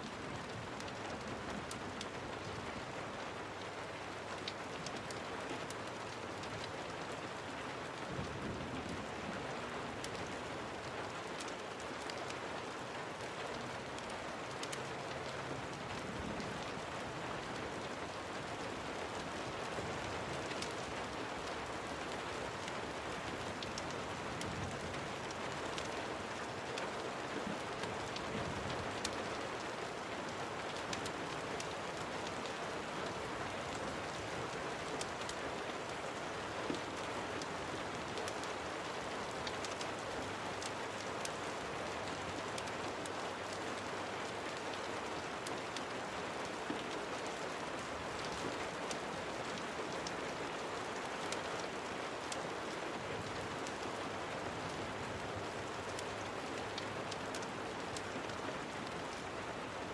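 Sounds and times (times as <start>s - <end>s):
rain falling: 0.0s - 59.9s
wood fire crackling: 3.5s - 6.7s, 10.8s - 34.2s, 34.8s - 50.4s, 55.1s - 58.1s.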